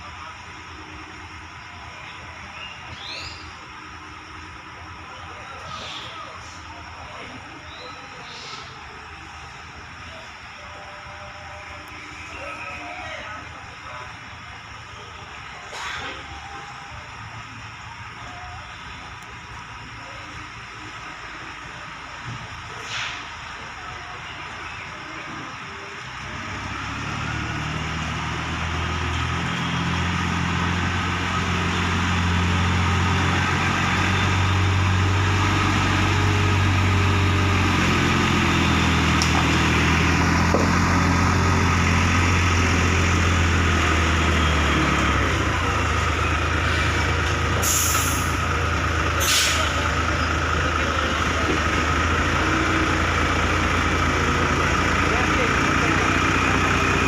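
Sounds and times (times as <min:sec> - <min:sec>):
diesel truck engine running: 0:00.0 - 0:57.0
air hiss bursts: 0:22.8 - 0:23.4, 0:47.6 - 0:48.4, 0:49.2 - 0:49.8.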